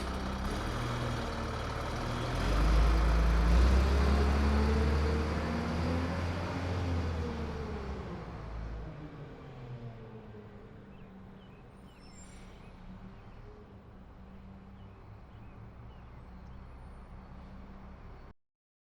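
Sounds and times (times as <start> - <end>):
truck engine idling: 0.0 - 4.0.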